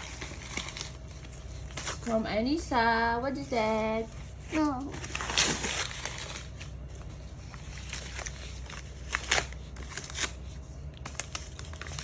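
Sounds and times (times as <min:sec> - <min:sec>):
gift wrapping rustling and tearing: 0:00.0 - 0:12.0
steady low hum: 0:00.0 - 0:12.0.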